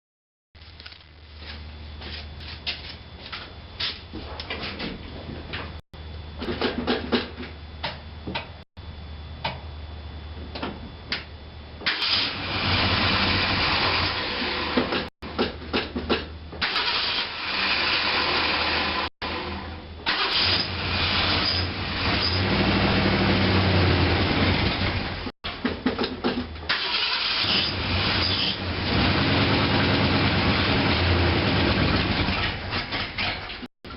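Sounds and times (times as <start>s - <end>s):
engine running unevenly: 17.4s - 25.3s, 27.8s - 33.2s
engine cranking and coughing: 20.1s - 21.2s.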